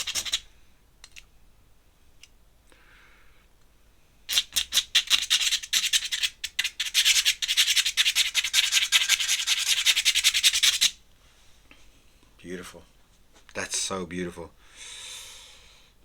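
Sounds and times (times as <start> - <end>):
pen nib scratching paper: 0.0 - 0.4, 4.3 - 10.9.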